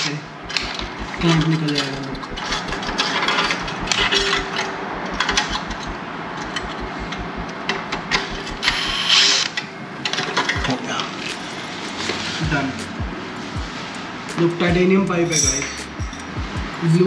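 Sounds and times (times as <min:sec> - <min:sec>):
metal clicking and scraping: 0:00.5 - 0:12.9.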